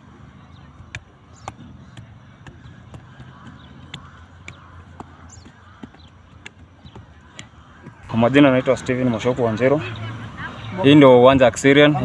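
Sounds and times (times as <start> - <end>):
steady low hum: 0.0 - 8.3
outdoor background noise: 0.0 - 12.0
sharp knocks: 0.8 - 8.1.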